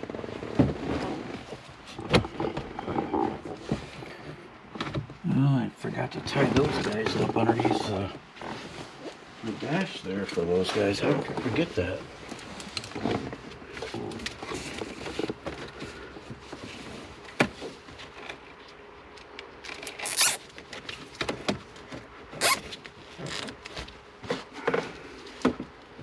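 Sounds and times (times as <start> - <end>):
short zipping sounds: 20.0 - 20.4, 22.4 - 22.6.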